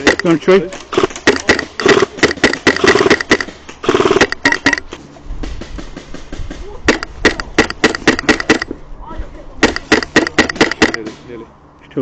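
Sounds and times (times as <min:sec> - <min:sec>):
airsoft guns firing: 0:00.0 - 0:04.8, 0:06.9 - 0:08.7, 0:09.6 - 0:11.2.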